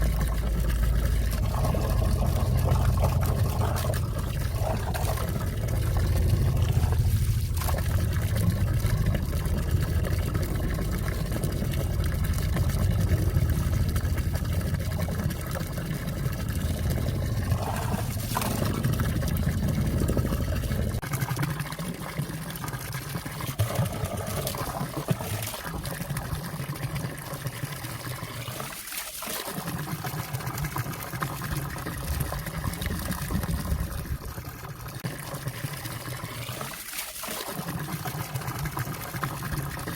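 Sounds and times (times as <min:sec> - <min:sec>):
low rumble: 0:00.0 - 0:21.0
stream water trickling under ice: 0:00.0 - 0:39.9.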